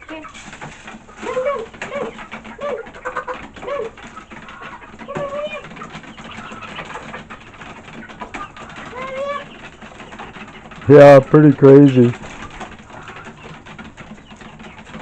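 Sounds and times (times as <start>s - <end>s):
chickens clucking: 0.0s - 15.0s.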